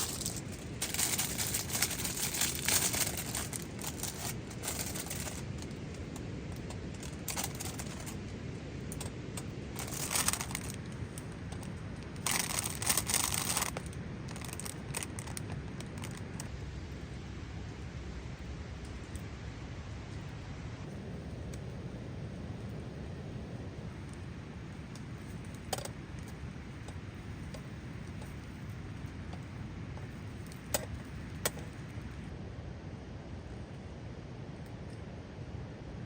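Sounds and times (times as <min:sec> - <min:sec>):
crinkling and rustling: 0:00.0 - 0:16.5, 0:24.9 - 0:32.1.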